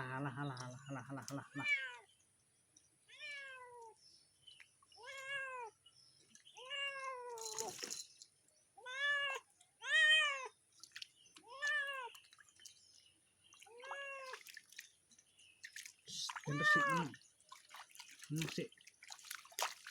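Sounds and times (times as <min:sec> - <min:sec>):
cat meowing: 0:01.6 - 0:02.0, 0:03.1 - 0:03.9, 0:05.0 - 0:05.7, 0:06.6 - 0:07.5, 0:08.8 - 0:10.5, 0:11.5 - 0:12.1, 0:13.7 - 0:14.4, 0:16.4 - 0:17.1
water splash: 0:15.6 - 0:19.9.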